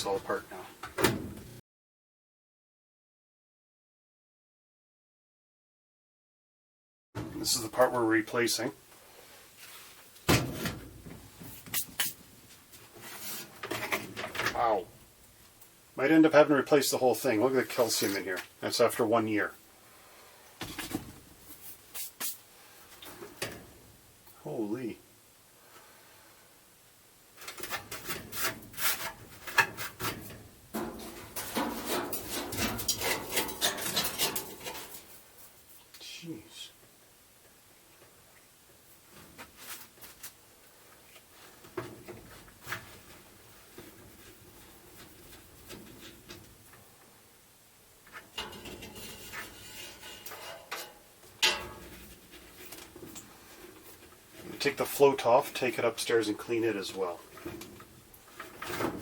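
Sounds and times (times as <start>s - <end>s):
plastic scraping and rubbing: 27.4s - 35.1s, 48.1s - 50.9s.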